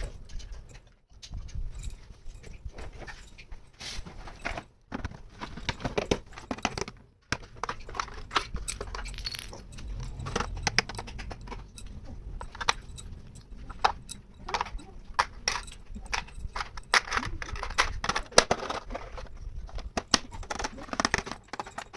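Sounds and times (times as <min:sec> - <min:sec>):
plastic toy pieces clicking: 0:07.6 - 0:21.9.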